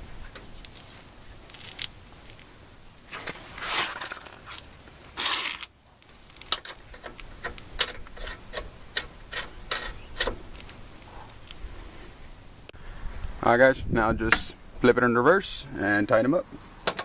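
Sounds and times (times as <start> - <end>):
lug nuts clicking and rattling: 6.0 - 10.8.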